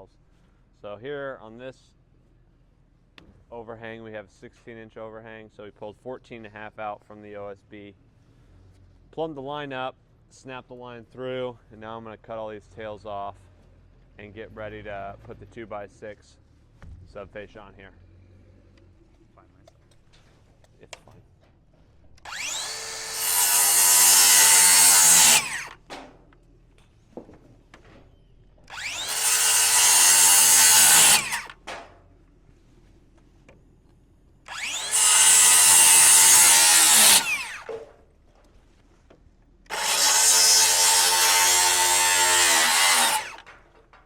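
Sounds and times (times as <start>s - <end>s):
reciprocating saw cutting wood: 22.2s - 25.9s, 28.6s - 31.6s, 34.5s - 37.9s, 39.7s - 43.6s
small knocks: 25.8s - 28.2s.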